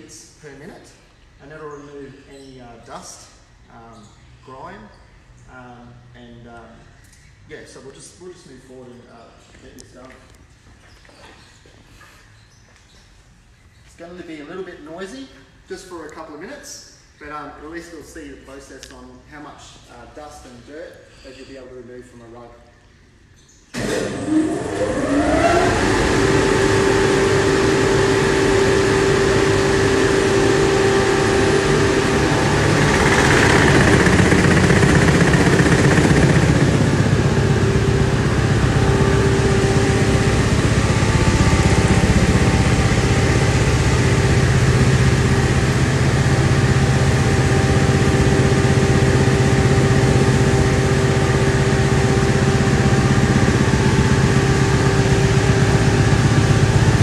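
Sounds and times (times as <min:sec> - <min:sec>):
rug-dusting machine motor hum: 0:23.8 - 0:57.0.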